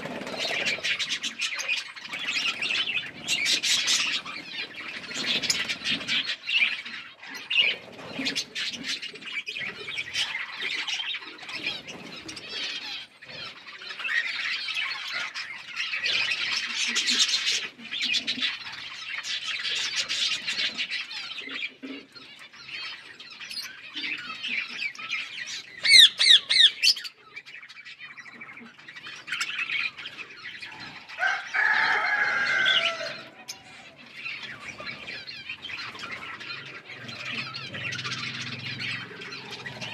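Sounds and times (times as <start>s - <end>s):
parrots chirping and chattering: 0.0s - 39.9s
parrot squawks: 25.8s - 27.1s.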